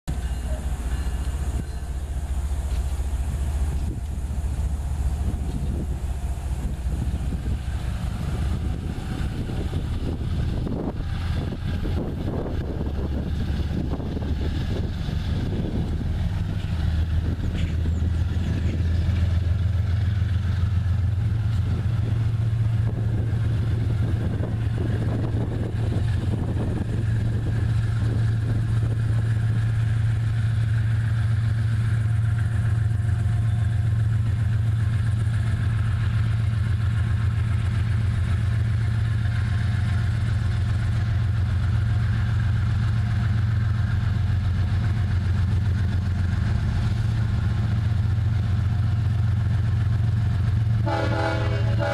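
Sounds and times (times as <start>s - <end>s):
locomotive diesel engine drone: 0.1s - 51.9s.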